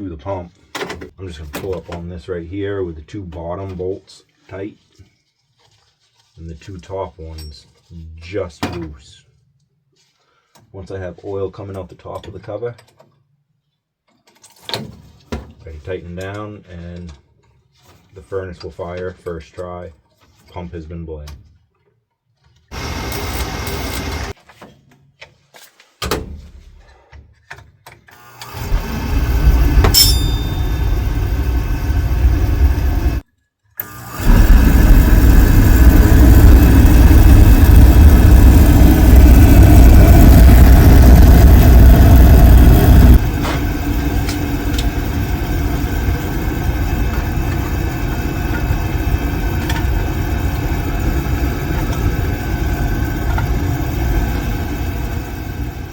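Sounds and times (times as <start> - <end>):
oil burner rumbling: 22.7 - 24.4, 28.3 - 33.2, 33.8 - 55.9.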